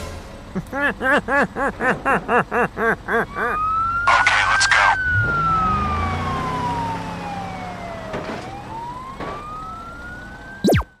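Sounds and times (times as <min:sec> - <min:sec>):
siren wailing: 0:03.3 - 0:11.0.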